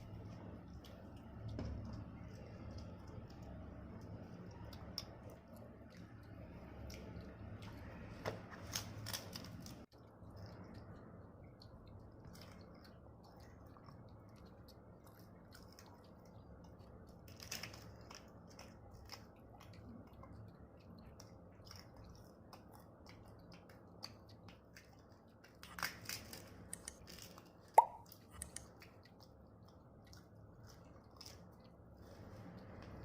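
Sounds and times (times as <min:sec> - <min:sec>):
person chewing food: 0:00.0 - 0:33.0
mouth sounds and small clicks: 0:09.6 - 0:33.0.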